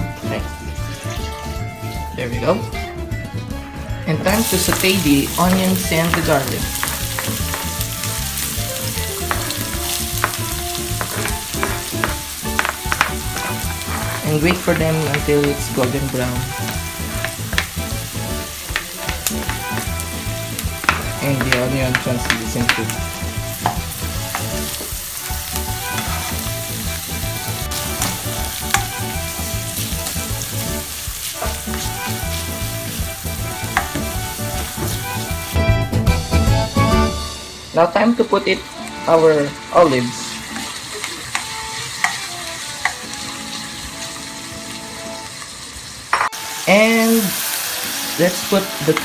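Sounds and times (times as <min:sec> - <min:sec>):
onions sizzling in oil: 0:04.3 - 0:35.6, 0:36.8 - 0:49.0
utensil clicking in pan: 0:04.5 - 0:26.5, 0:27.4 - 0:29.1, 0:40.5 - 0:43.3.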